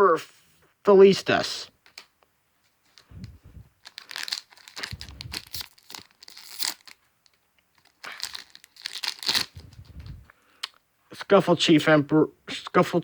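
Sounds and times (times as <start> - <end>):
foil wrapper crinkling and tearing: 3.7 - 9.7.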